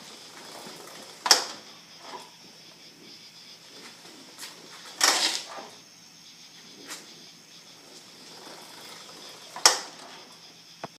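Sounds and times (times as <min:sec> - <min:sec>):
motorcycle popping: 0:00.0 - 0:02.4, 0:07.8 - 0:10.9
faint steady background noise: 0:00.0 - 0:10.9.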